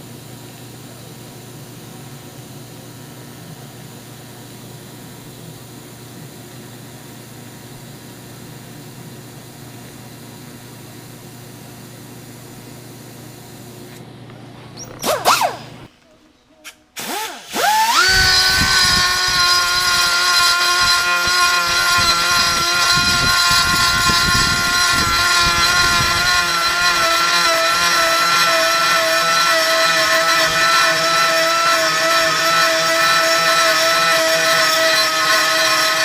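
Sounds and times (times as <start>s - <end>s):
power tool high whine: 14.8s - 15.8s, 17.0s - 36.0s
loud sweeping whir: 15.0s - 15.9s, 17.0s - 28.2s.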